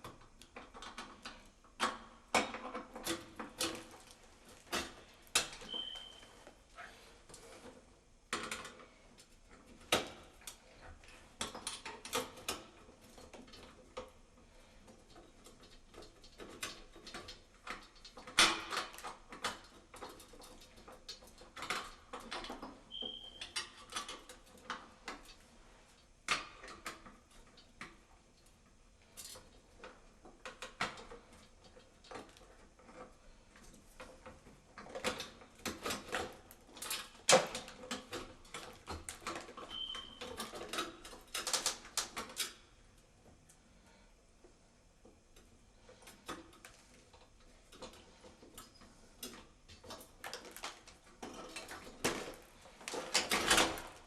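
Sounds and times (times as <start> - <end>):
short high squeak: 5.7 - 6.3.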